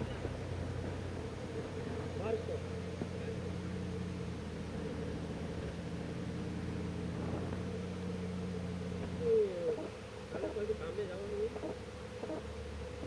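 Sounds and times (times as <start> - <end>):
engine running steadily: 0.0 - 13.0.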